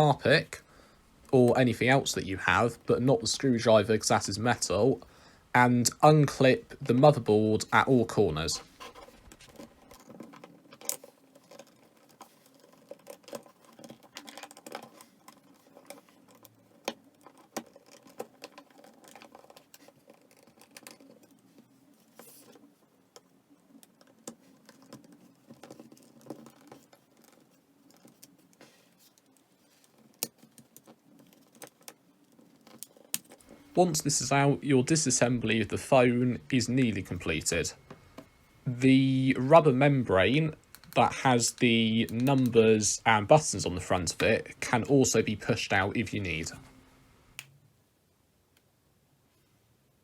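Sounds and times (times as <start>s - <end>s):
plastic pick clicking and scratching: 7.7s - 33.6s, 40.6s - 42.8s.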